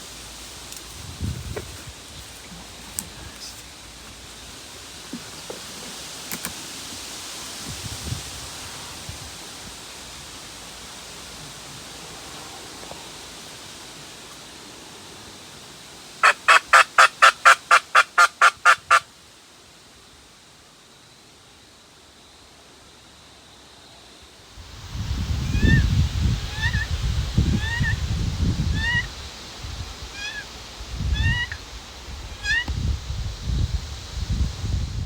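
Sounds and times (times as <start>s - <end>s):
faint outdoor hiss: 0.0s - 35.0s
turkey yelping: 16.2s - 19.0s, 26.5s - 26.9s, 27.5s - 28.0s, 28.7s - 29.1s, 30.2s - 30.5s, 31.1s - 31.6s, 32.4s - 32.7s.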